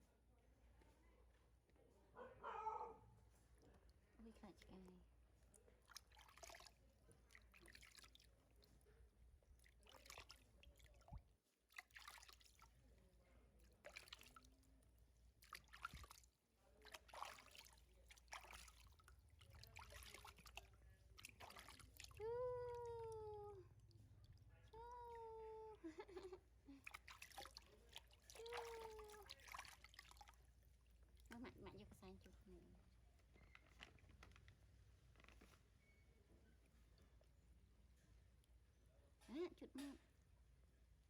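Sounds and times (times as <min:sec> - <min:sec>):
faint rustling and handling: 0:27.0 - 0:38.1.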